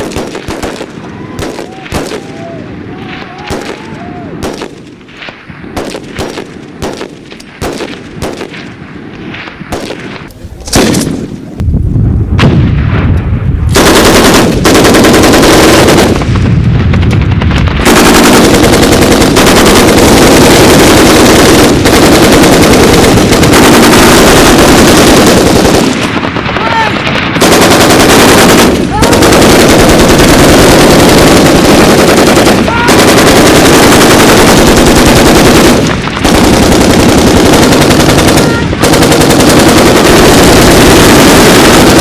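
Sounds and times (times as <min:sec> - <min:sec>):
machine-gun fire: 0:00.0 - 0:11.4, 0:13.7 - 0:42.0
single gunshots: 0:03.4 - 0:11.4.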